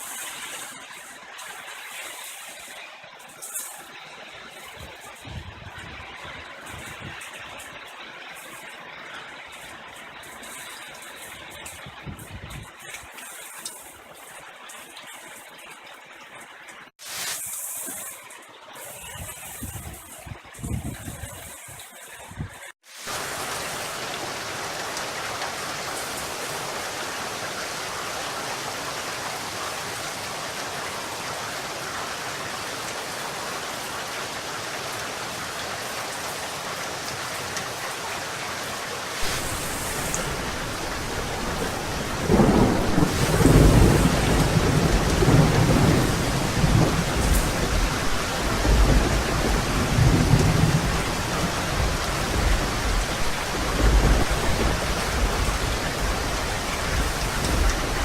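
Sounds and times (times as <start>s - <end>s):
heavy rain hissing: 0.0s - 14.7s, 17.0s - 58.0s
thunder crack: 39.2s - 58.0s
thunder rumbling: 39.2s - 58.0s.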